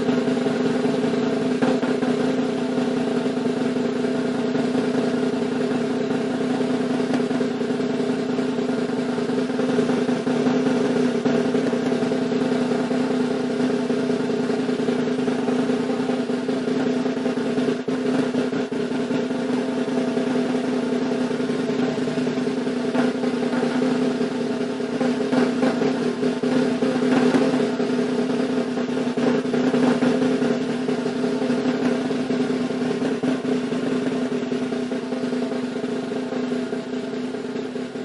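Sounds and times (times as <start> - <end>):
drum roll: 5.8 - 38.0.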